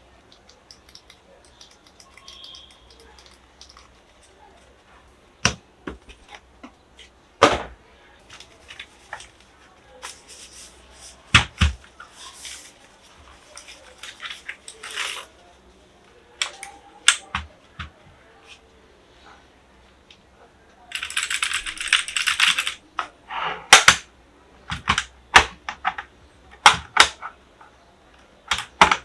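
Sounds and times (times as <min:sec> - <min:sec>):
packaging rustling: 0:08.3 - 0:15.4.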